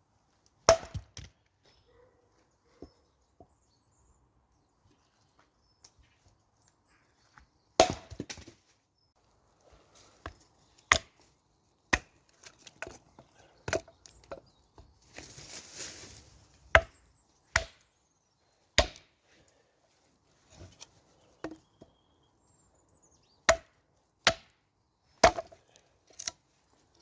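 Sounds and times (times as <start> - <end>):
axe chopping firewood: 0.6 - 1.4, 7.8 - 8.6, 10.2 - 11.3, 11.9 - 14.9, 16.7 - 17.9, 18.8 - 19.2, 23.5 - 24.6, 25.2 - 26.4
short rustle: 15.1 - 16.4.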